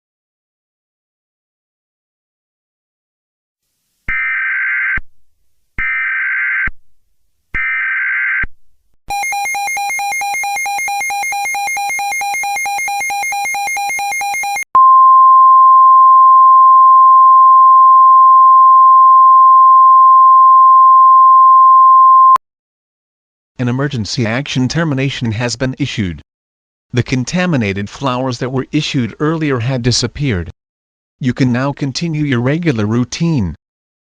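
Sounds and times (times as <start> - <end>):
steady alarm tone: 9.1 - 14.6.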